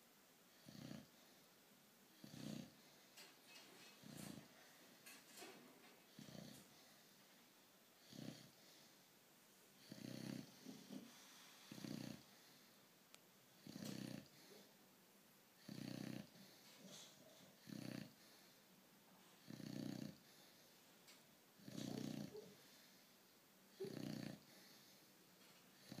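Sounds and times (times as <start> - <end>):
faint snoring: 0.5 - 1.5, 2.1 - 7.2, 7.9 - 9.0, 9.8 - 12.8, 13.6 - 14.8, 15.6 - 20.7, 21.6 - 25.1, 25.8 - 26.0.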